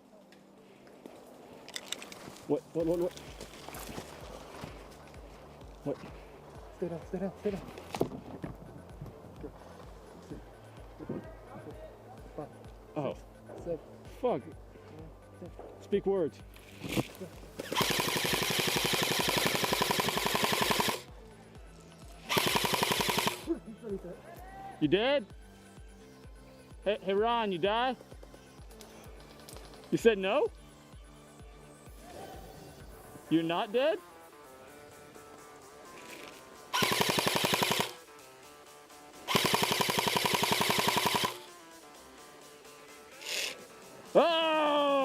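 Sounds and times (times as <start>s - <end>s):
airsoft rifle firing full auto: 17.6s - 21.0s, 22.3s - 23.5s, 36.8s - 38.0s, 39.3s - 41.5s.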